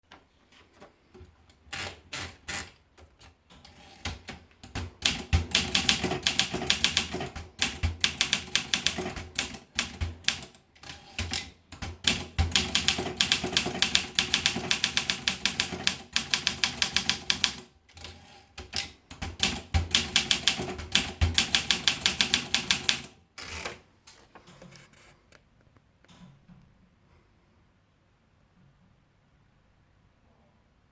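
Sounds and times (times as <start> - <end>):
typewriter keys striking: 4.0 - 23.1.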